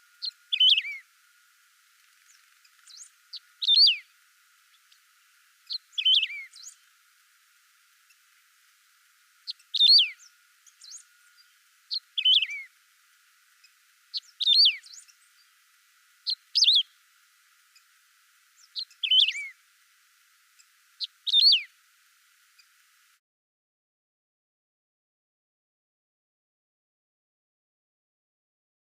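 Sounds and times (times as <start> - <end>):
finch singing trills: 0.1 - 1.1, 2.2 - 6.9, 9.4 - 12.7, 13.6 - 15.6, 16.2 - 17.0, 18.6 - 19.6, 20.6 - 21.7
faint bird chips: 0.2 - 1.0, 2.0 - 6.9, 9.4 - 12.7, 13.6 - 15.6, 16.2 - 17.0, 18.6 - 19.6, 20.5 - 21.7.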